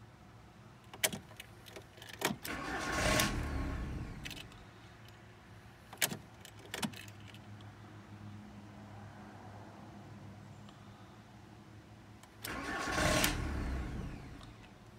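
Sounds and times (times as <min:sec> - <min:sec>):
car engine cranking: 0:01.0 - 0:04.6, 0:12.2 - 0:14.7.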